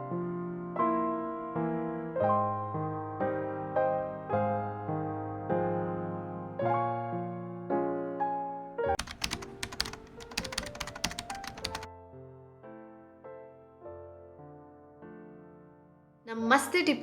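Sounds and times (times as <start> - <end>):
soft piano chords: 0.0 - 17.0
rapid sharp clicks: 9.0 - 11.9.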